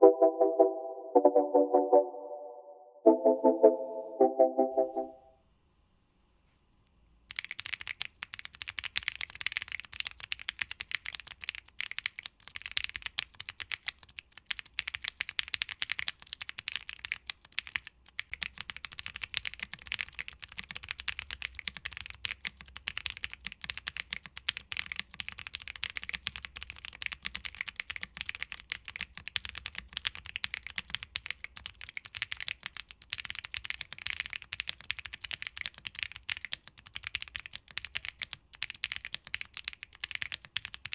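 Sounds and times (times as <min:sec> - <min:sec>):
mechanical keyboard typing: 0:07.3 - 0:40.9.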